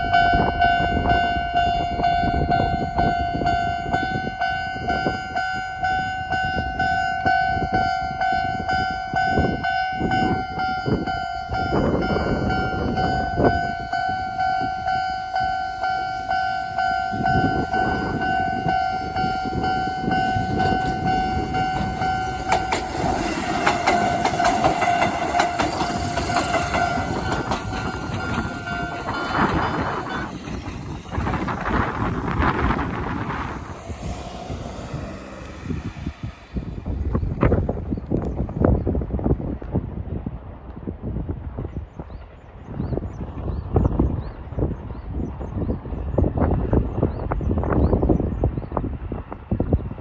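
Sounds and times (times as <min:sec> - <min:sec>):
level crossing electronic alarm: 0:00.0 - 0:22.8, 0:23.6 - 0:30.4
train wheels clacking: 0:20.3 - 0:36.8.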